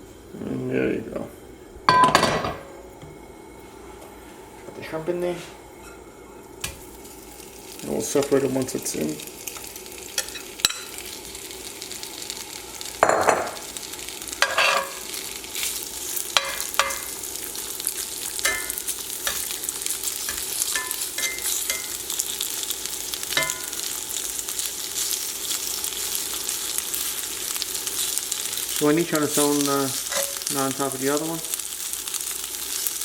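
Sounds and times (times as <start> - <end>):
shrimp sizzling in hot oil: 6.6 - 33.0
metal utensil scraping a pan: 14.4 - 14.9.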